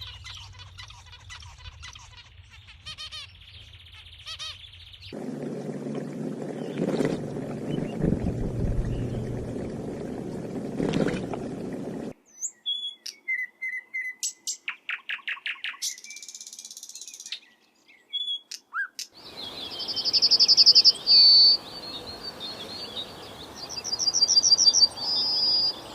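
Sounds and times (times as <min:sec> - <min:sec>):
birds calling: 0:04.2 - 0:13.1
low noisy rumble: 0:05.2 - 0:12.1.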